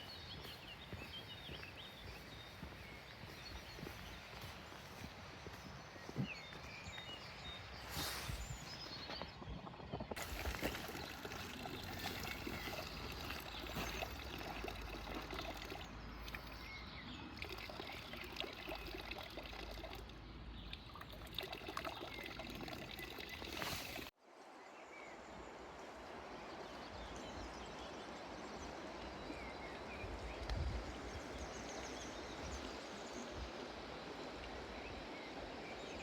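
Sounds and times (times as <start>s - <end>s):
water trickling: 10.2s - 24.1s.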